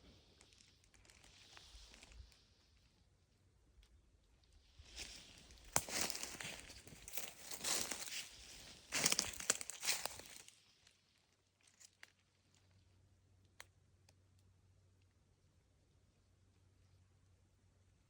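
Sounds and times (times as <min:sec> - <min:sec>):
footsteps on dry leaves: 0:04.9 - 0:10.5
faint twig snaps: 0:05.6 - 0:08.1.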